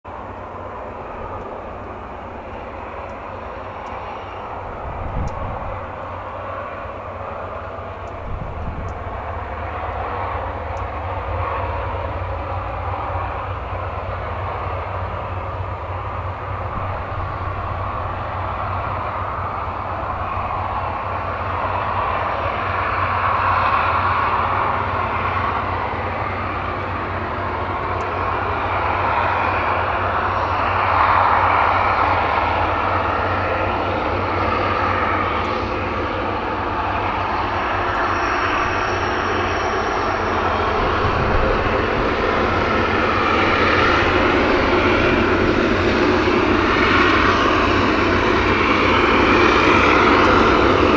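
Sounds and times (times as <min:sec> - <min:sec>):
diesel locomotive engine drone: 0:00.0 - 0:50.9
locomotive hissing: 0:00.2 - 0:50.9.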